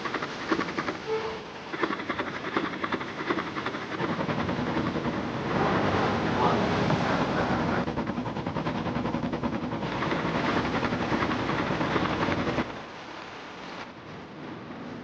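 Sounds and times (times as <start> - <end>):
engine chugging: 0.0 - 12.8.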